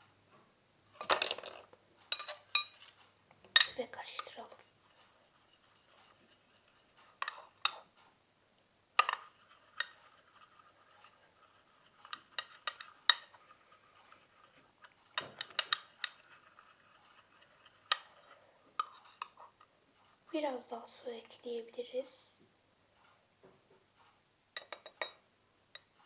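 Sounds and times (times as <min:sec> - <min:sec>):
spoon clinking against bowl: 0:02.1 - 0:02.9, 0:03.6 - 0:04.3, 0:24.6 - 0:25.2
spoon stirring in bowl: 0:02.1 - 0:08.0, 0:09.0 - 0:20.2.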